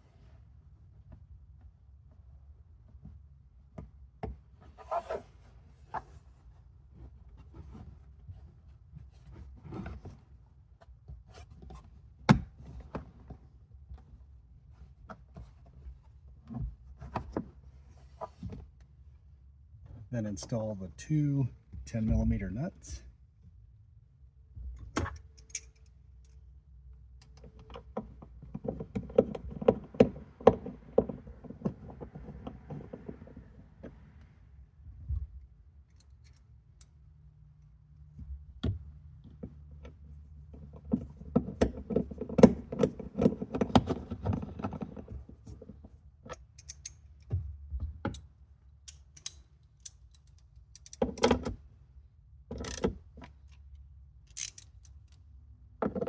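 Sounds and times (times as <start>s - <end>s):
ratchet wrench clicking: 54.3s - 54.9s.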